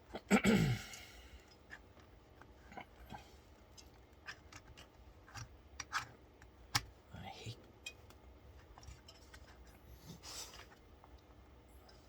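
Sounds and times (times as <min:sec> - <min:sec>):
plastic and metal parts clicking: 0:03.8 - 0:06.9.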